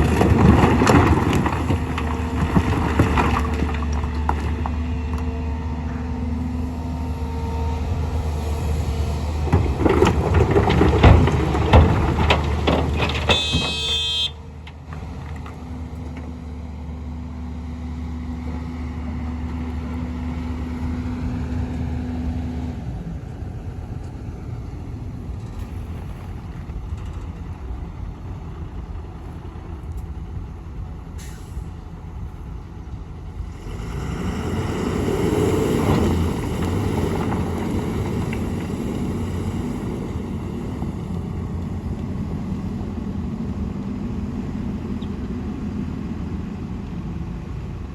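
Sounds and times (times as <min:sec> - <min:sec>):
stones rattling and banging: 0:00.0 - 0:04.8, 0:09.4 - 0:14.1
diesel machinery running: 0:00.0 - 0:47.9.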